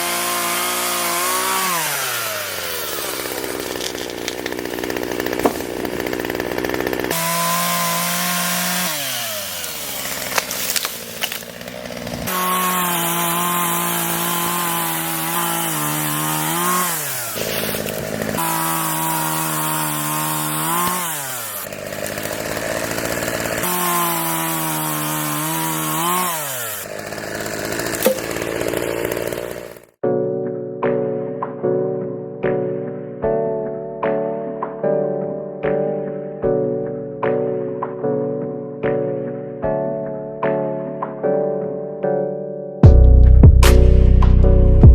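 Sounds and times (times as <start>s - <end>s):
chainsaw cutting wood: 0.0s - 30.0s, 42.8s - 44.9s.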